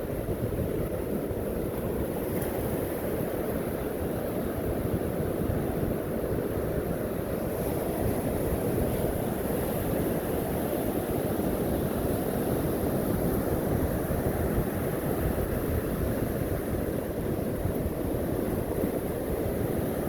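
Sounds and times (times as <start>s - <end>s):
ocean surf on a beach: 0.0s - 20.0s
wind rumbling on microphone: 0.0s - 20.0s.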